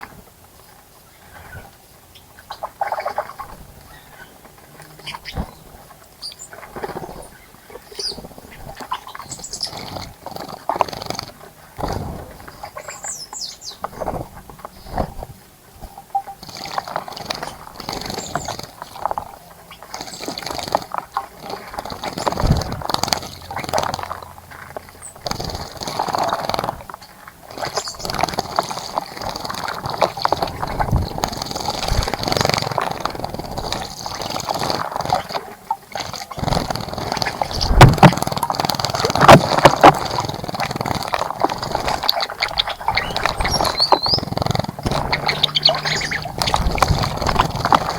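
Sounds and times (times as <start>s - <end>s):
water splashes in birdbath: 0.0s - 47.9s
birds chirping: 1.0s - 47.9s.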